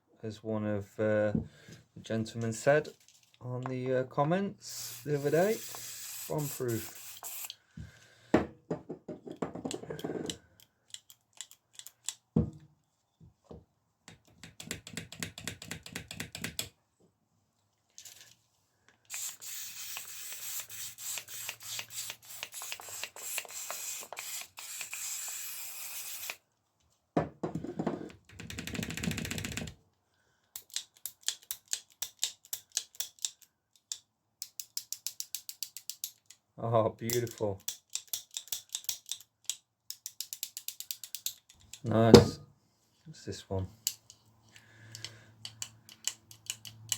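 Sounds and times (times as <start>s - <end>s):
spray can hissing: 4.7s - 7.6s, 19.1s - 26.4s
bicycle shifter ratchet clicking: 44.9s - 46.9s.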